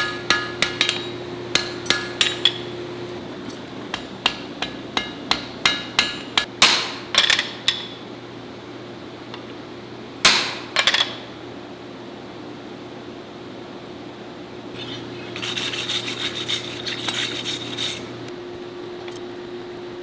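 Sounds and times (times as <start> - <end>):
hammer ringing on anvil: 0.0 - 7.9, 10.3 - 11.2.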